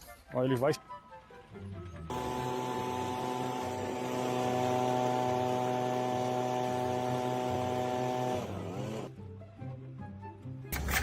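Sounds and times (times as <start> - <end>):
electric motor humming: 2.1 - 9.1.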